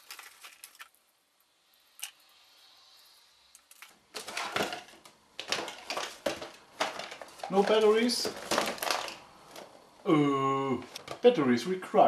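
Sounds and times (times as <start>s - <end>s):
hard plastic parts clicking: 3.7s - 9.7s.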